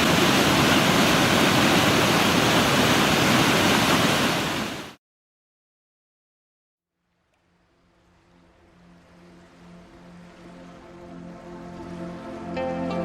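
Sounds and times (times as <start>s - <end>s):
waterfall roaring: 0.0s - 4.9s.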